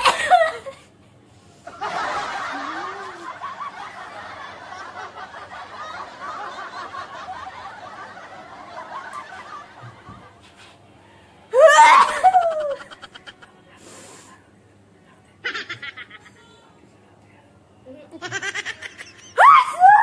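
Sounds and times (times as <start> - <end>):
person snickering: 2.4 - 3.4.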